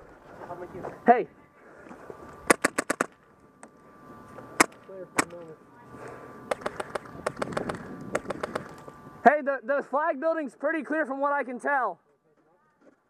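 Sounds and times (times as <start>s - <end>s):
airsoft guns firing: 2.5s - 3.2s, 6.5s - 8.7s.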